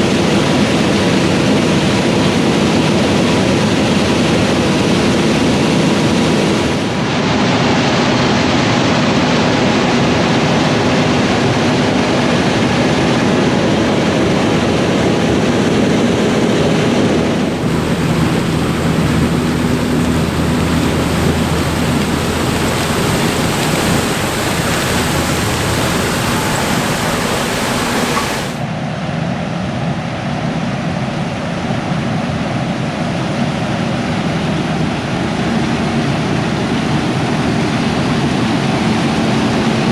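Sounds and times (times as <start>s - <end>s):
farm machinery engine hum: 17.3s - 28.7s
wide rush of noise: 17.3s - 28.7s.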